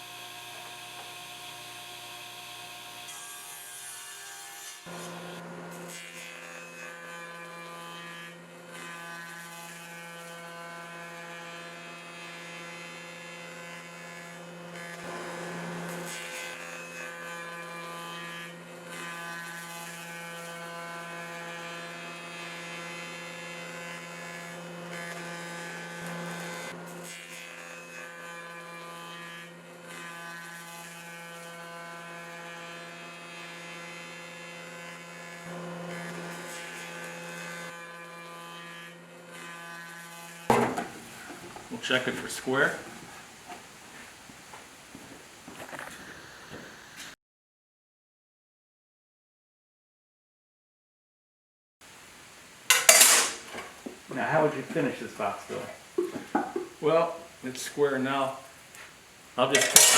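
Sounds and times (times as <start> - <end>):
electric motor humming: 0.0 - 39.9
scraping noises: 40.5 - 47.2, 52.7 - 58.2, 58.8 - 59.9.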